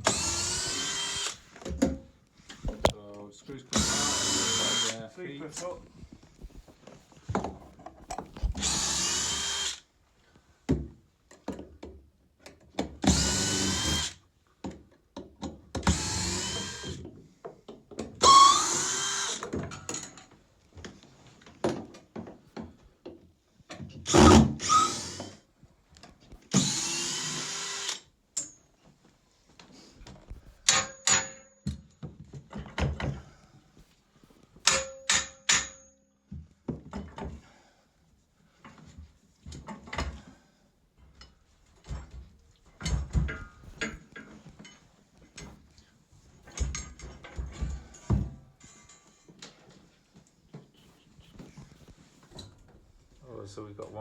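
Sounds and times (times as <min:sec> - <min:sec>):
power drill unscrewing screws: 0:00.0 - 0:01.8, 0:02.5 - 0:03.0, 0:03.7 - 0:05.8, 0:08.1 - 0:09.8, 0:13.0 - 0:14.2, 0:15.8 - 0:17.0, 0:18.2 - 0:20.2, 0:24.1 - 0:25.4, 0:26.5 - 0:28.1.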